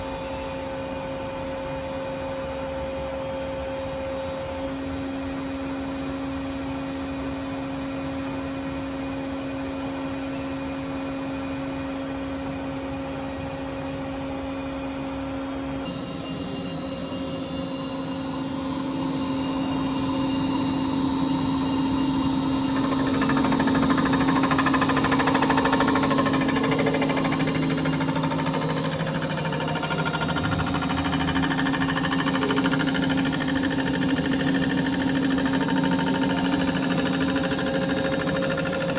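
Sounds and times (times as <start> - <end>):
high machine whine: 0.0 - 38.9
machine tool humming: 15.9 - 38.9.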